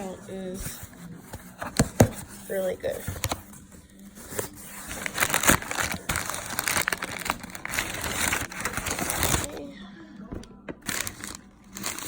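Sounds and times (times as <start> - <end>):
packaging crinkling and rustling: 2.2 - 9.6, 10.8 - 12.0.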